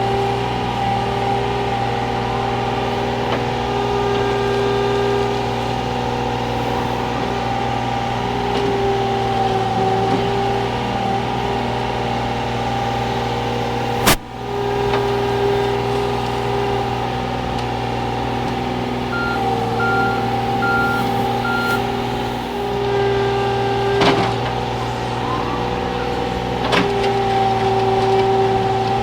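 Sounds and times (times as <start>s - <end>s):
diesel engine running: 0.0s - 29.0s
hydraulic whine: 12.9s - 27.9s
short beeps: 19.1s - 22.0s.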